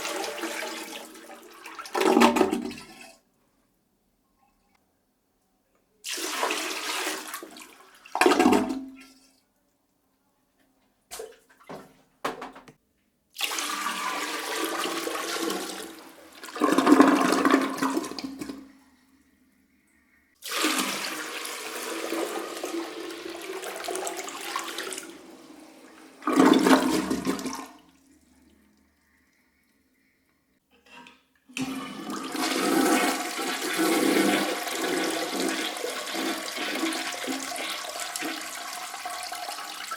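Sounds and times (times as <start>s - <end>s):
toilet flushing: 0.0s - 3.2s, 6.0s - 9.3s, 13.4s - 19.3s, 20.4s - 29.2s, 31.5s - 39.9s.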